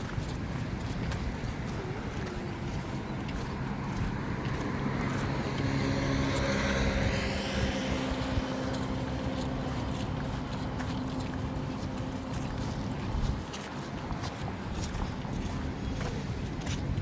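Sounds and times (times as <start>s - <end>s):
vehicle engine passing by: 3.8s - 10.1s.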